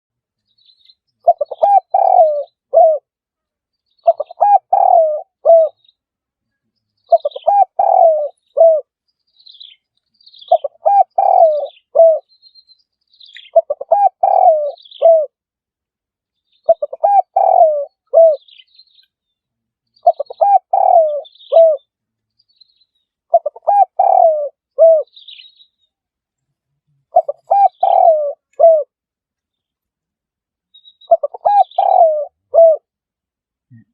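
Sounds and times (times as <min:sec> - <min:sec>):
small birds chirping: 0:00.3 - 0:15.4, 0:16.2 - 0:32.8
dove cooing: 0:01.2 - 0:03.1, 0:04.0 - 0:05.8, 0:07.1 - 0:08.9, 0:10.4 - 0:12.3, 0:13.4 - 0:15.4, 0:16.6 - 0:18.5, 0:20.0 - 0:21.9, 0:23.3 - 0:25.4, 0:27.1 - 0:29.0, 0:31.1 - 0:32.9.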